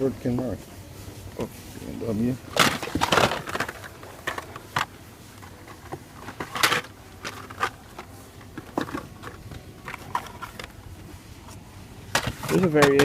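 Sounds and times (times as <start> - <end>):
plastic and card clicks and rustles: 2.5 - 10.8.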